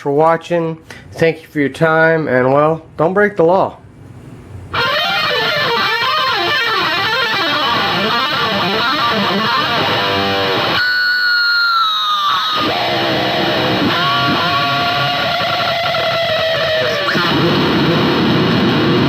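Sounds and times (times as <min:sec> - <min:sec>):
distorted electric guitar lead: 0:04.7 - 0:19.0.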